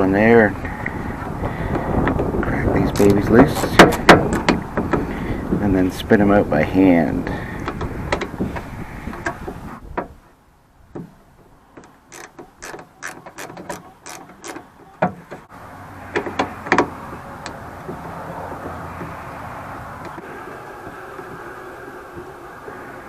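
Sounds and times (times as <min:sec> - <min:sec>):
steady background noise: 0:00.0 - 0:23.0
ratchet clicking: 0:12.1 - 0:14.6.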